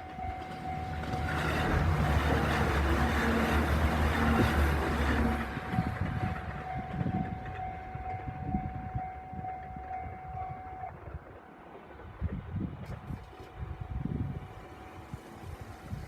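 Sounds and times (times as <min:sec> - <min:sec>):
level crossing warning bell: 0:00.0 - 0:04.1, 0:05.4 - 0:11.0
train rumbling past: 0:00.0 - 0:16.0.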